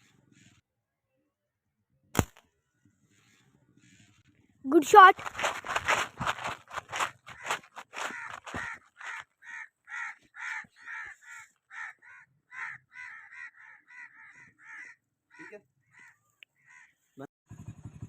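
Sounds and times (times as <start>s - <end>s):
crows cawing: 6.2s - 17.1s.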